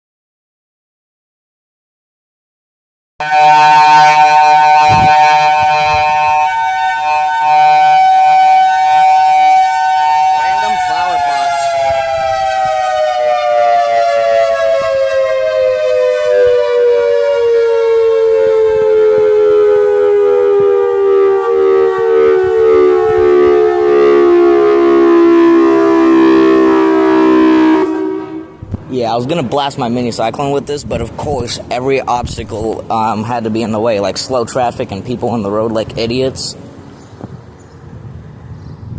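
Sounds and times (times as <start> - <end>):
dual-tone warning siren: 3.2 - 28.8.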